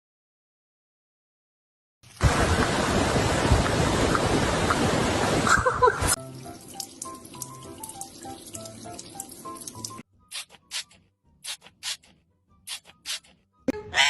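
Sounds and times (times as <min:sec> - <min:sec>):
tap water running: 0:02.0 - 0:10.1.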